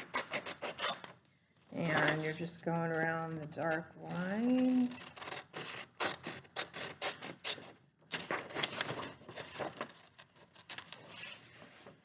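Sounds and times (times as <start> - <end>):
scissors snipping paper: 4.1 - 7.4.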